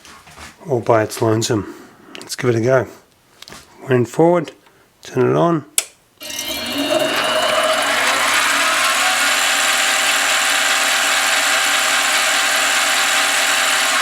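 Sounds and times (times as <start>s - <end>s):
lathe motor and gear whine: 6.2s - 14.0s.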